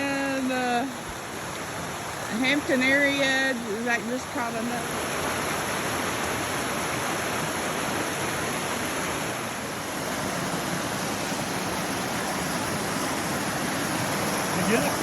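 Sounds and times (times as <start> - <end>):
stream water rushing: 0.0 - 15.0.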